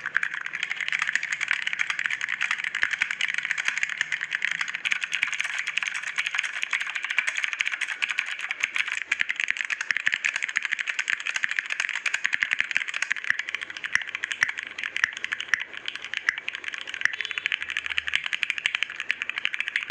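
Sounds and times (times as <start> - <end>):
fast typing on computer keyboard: 0.0 - 19.9.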